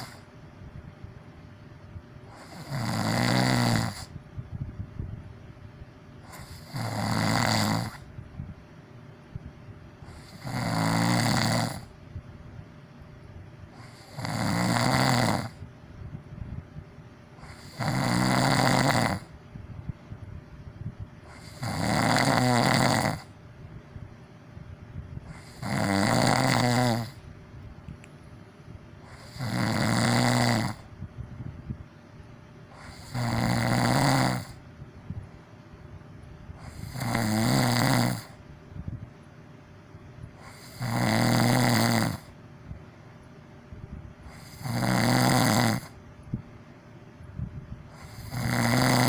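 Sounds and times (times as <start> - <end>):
person snoring: 0.0 - 0.2, 2.3 - 4.1, 6.3 - 8.1, 10.0 - 11.9, 13.8 - 15.6, 17.4 - 19.3, 21.3 - 23.3, 25.3 - 27.2, 29.0 - 30.9, 32.7 - 34.6, 36.6 - 38.4, 40.4 - 42.4, 44.2 - 46.0, 47.9 - 49.0
quiet breathing: 0.0 - 0.4.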